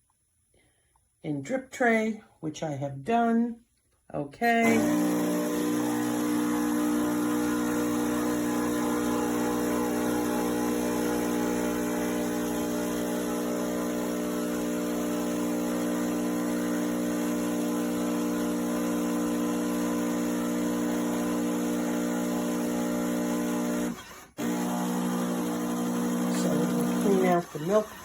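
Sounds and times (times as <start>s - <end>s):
coffee machine humming: 4.6s - 28.0s
water rushing: 26.3s - 28.0s.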